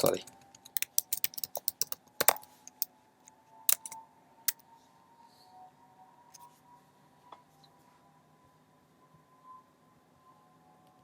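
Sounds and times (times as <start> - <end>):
keyboard keystrokes: 0.5 - 2.9, 3.7 - 4.6.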